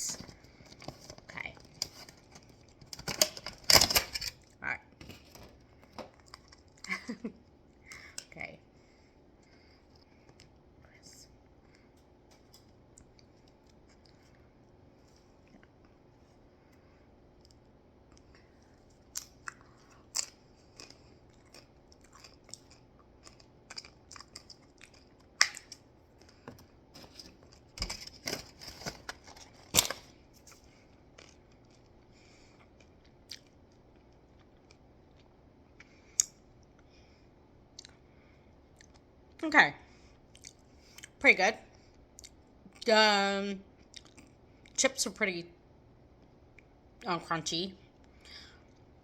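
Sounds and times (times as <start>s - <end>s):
tortilla chips crunching: 19.0s - 26.2s.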